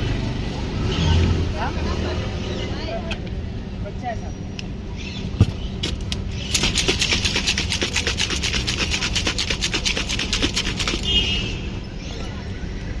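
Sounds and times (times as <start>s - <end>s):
rasping strokes: 6.5s - 11.2s.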